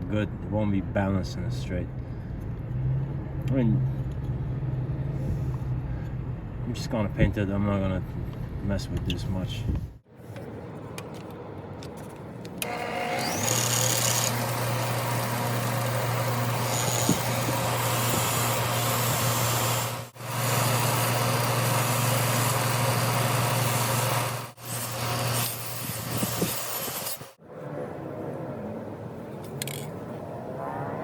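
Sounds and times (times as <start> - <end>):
electric power tool running: 12.6 - 27.4.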